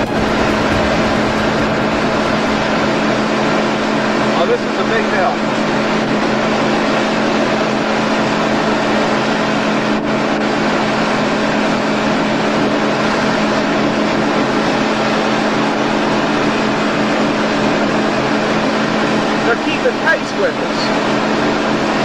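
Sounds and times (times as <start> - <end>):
broad rushing noise: 0.0 - 4.7
boat engine droning: 0.0 - 5.5.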